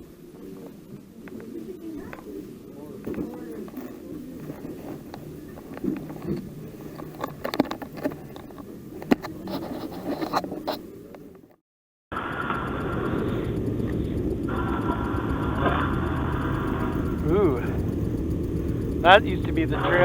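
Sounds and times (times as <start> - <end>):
scraping and clicking handling: 3.0 - 11.6
snowmobile engine whining: 12.3 - 20.0.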